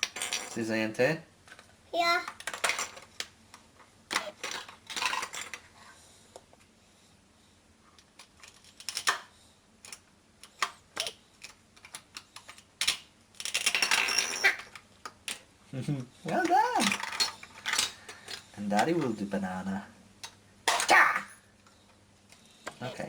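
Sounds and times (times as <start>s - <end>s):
toy pieces clicking together: 1.5s - 3.4s, 4.1s - 5.6s, 8.0s - 15.5s, 16.3s - 19.0s.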